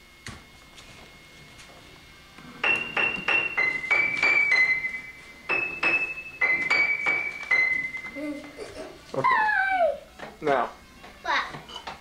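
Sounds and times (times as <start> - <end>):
piano tune high notes: 2.6 - 8.6.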